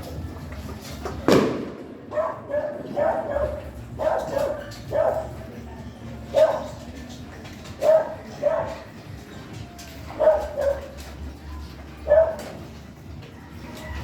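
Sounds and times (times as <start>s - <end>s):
dog barking: 2.1s - 5.5s, 6.3s - 6.8s, 7.8s - 8.9s, 10.1s - 11.0s, 12.0s - 12.6s.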